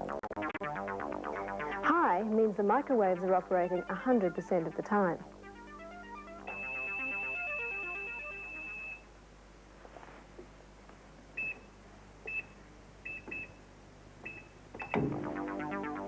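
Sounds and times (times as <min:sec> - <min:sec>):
microwave control panel beeping: 0:06.5 - 0:09.0, 0:12.3 - 0:13.6, 0:14.2 - 0:15.2.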